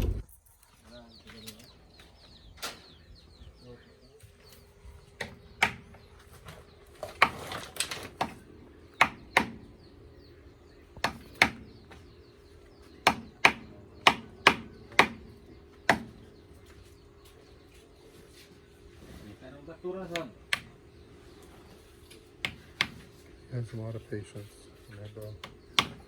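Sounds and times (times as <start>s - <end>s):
hammer knocking: 9.0s - 9.7s, 11.0s - 12.0s, 13.0s - 16.2s, 25.4s - 26.0s.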